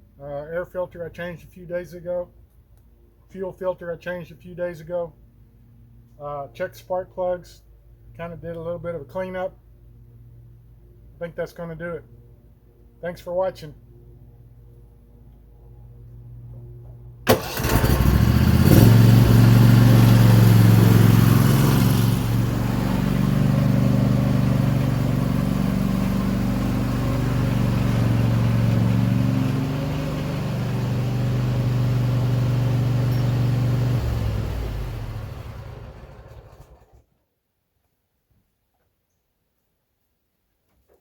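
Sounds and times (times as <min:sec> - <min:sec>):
mower engine starting and running: 0:17.2 - 0:37.0.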